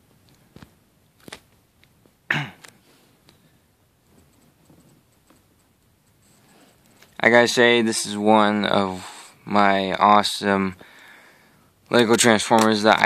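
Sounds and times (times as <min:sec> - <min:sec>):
faint sharp clicks and taps: 0:04.1 - 0:07.2.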